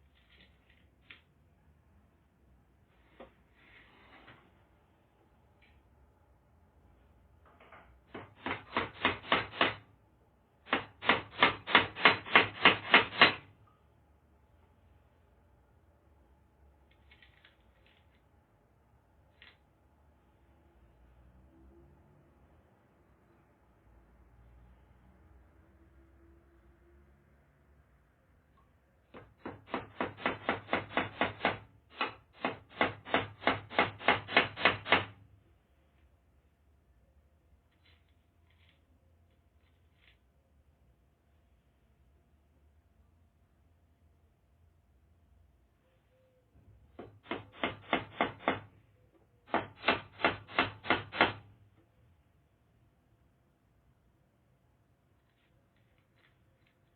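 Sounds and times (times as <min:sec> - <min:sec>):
hammer driving nail into wood: 0:08.1 - 0:09.9, 0:10.7 - 0:13.5, 0:29.2 - 0:35.2, 0:47.0 - 0:48.7, 0:49.5 - 0:51.5.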